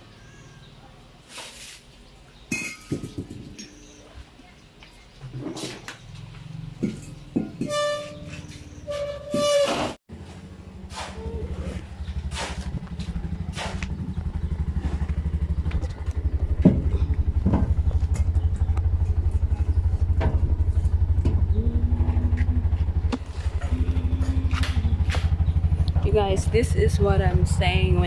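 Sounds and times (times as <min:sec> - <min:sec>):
small motorcycle engine running: 0:10.1 - 0:28.0
knocks and rattles: 0:12.0 - 0:21.6.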